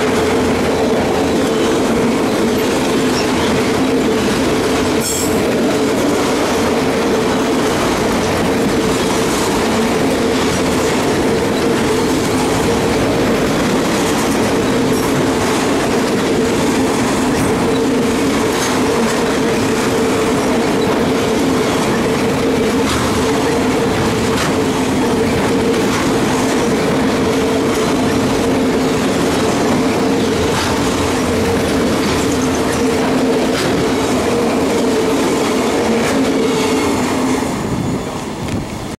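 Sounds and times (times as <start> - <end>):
train wheels clicking over rail joints: 0.0 - 39.0.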